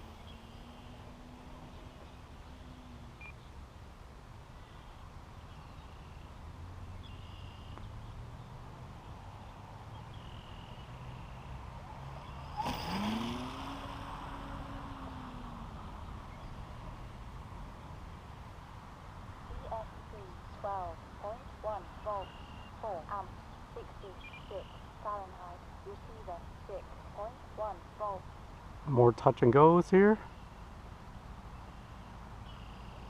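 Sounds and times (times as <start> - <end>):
model plane motor whining: 12.3 - 16.0.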